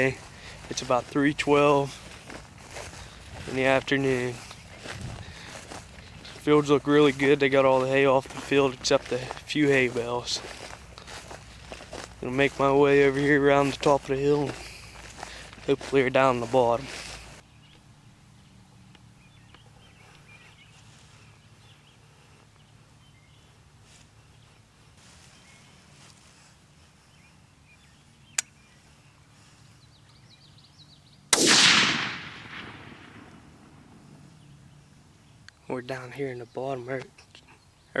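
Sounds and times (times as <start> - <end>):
rifle shot: 31.3 - 34.2.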